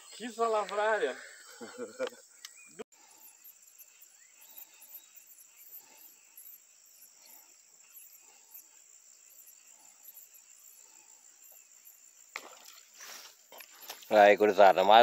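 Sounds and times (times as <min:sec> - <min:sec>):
faint insects chirping: 0:00.0 - 0:15.0.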